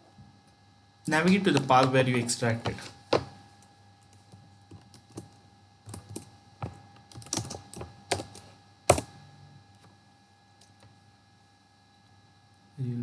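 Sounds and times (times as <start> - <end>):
keyboard keystrokes: 7.1 - 9.1.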